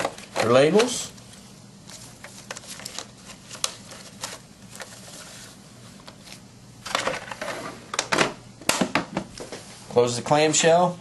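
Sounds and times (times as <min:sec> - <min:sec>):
rustling handling noise: 0:00.0 - 0:07.6.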